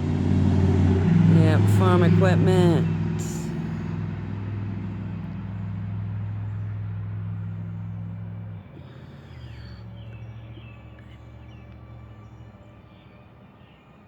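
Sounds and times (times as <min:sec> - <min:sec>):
farm machine engine humming: 0:00.0 - 0:09.4
birds chirping faintly: 0:05.0 - 0:14.0.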